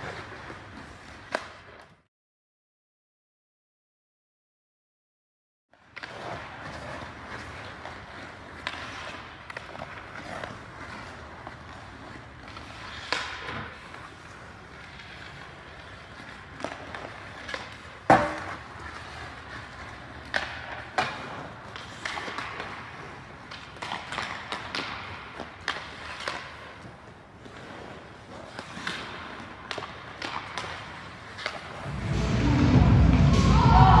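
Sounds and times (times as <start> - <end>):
skate blades scraping on ice: 0.0 - 2.0, 5.8 - 31.9
hockey stick hitting puck: 12.4 - 26.8, 28.5 - 31.8.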